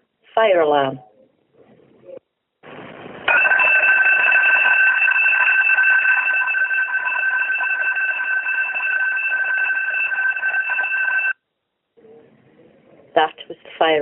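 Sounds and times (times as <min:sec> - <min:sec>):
fire alarm over telephone: 0:03.3 - 0:11.4.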